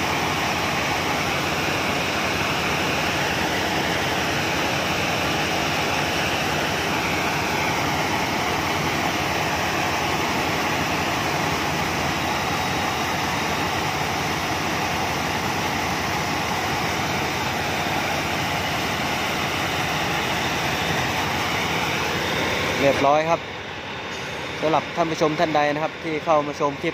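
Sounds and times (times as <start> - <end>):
combine harvester running: 0.0 - 26.9.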